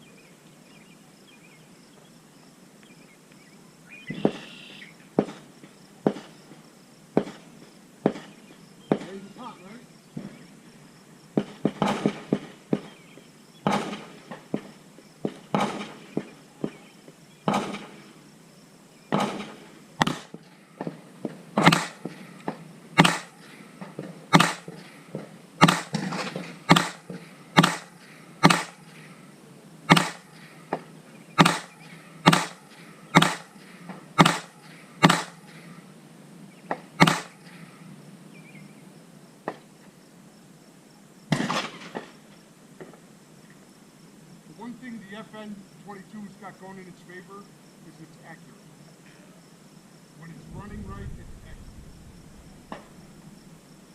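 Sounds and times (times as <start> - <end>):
faint distant gunshots: 11.4 - 13.0, 13.6 - 16.8, 17.4 - 18.0, 21.6 - 22.3, 23.0 - 28.8, 29.9 - 30.4, 31.4 - 33.6, 34.2 - 35.6, 37.0 - 37.4
gunshots: 13.6 - 14.2, 21.6 - 22.0, 23.0 - 23.3, 24.3 - 24.7, 25.6 - 28.8, 29.9 - 30.2, 31.4 - 32.6, 33.2 - 33.5, 34.2 - 35.4, 37.0 - 37.4.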